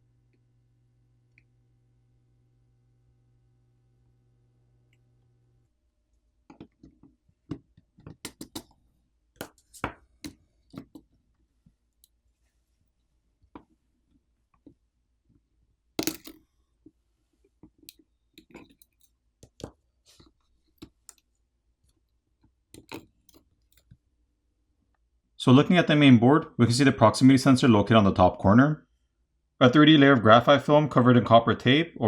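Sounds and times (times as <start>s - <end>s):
tools clicking on phone parts: 8.0s - 8.7s, 16.0s - 16.4s, 22.8s - 23.9s.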